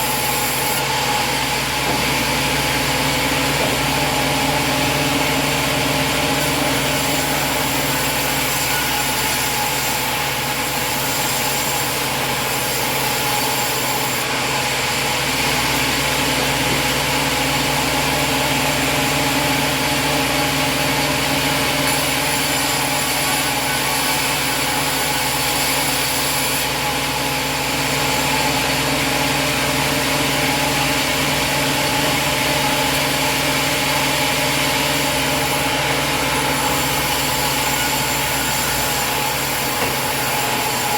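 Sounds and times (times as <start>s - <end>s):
engine running steadily: 0.8s - 8.5s.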